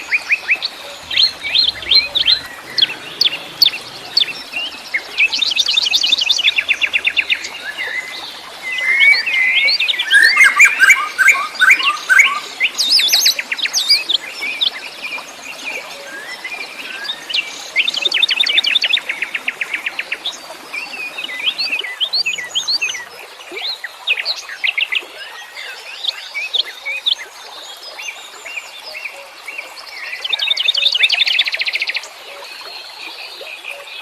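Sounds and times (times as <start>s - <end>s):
songbirds chirping and singing: 0.0s - 14.1s.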